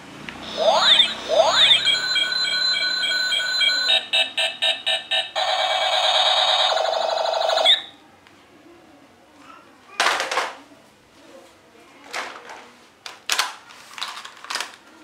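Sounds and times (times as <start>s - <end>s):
toy gun electronic sound effects: 0.4s - 7.9s.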